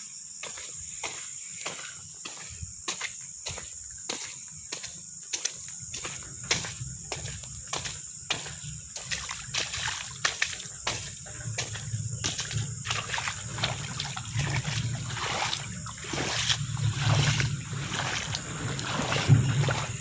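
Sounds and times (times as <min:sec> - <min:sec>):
floodwater splashing: 0:05.9 - 0:20.0.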